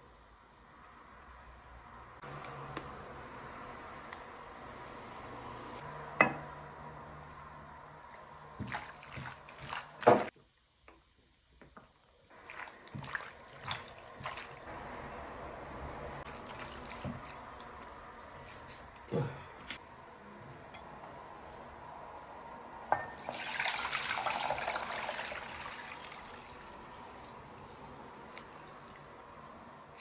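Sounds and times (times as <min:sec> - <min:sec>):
water splashing and dripping: 0:07.2 - 0:10.3, 0:12.3 - 0:14.7, 0:16.2 - 0:18.7, 0:23.3 - 0:30.0.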